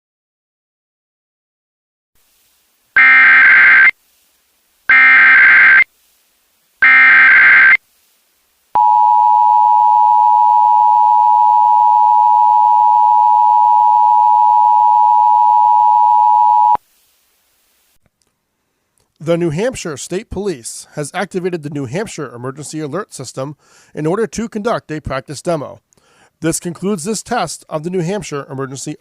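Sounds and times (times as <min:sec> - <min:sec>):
digital data tone bursts: 0:03.0 - 0:03.9, 0:04.9 - 0:05.9, 0:06.8 - 0:07.8
two-tone attention signal: 0:03.0 - 0:03.9, 0:04.9 - 0:05.8, 0:06.8 - 0:07.8, 0:08.8 - 0:16.8.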